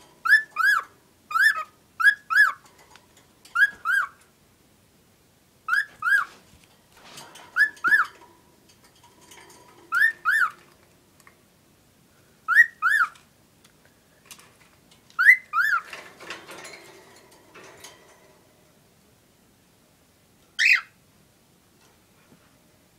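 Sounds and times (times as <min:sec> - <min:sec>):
cockatiel whistling: 0:05.7 - 0:06.3, 0:12.5 - 0:13.2.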